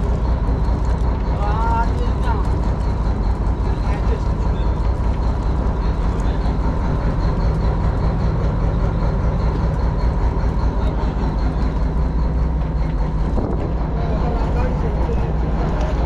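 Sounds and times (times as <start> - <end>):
boat engine droning: 0.0 - 16.0.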